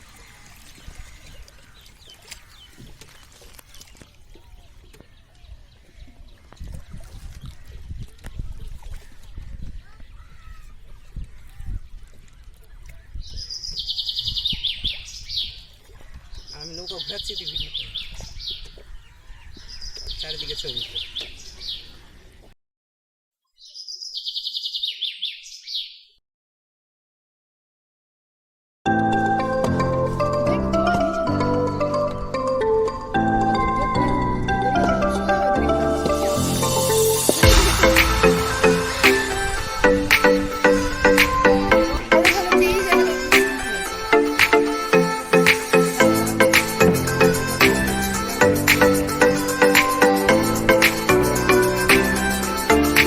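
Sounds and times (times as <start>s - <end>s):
birds chirping: 0.0s - 7.8s, 8.6s - 22.5s, 23.5s - 26.2s, 34.0s - 53.0s
songbird singing: 12.0s - 22.4s, 23.5s - 26.2s.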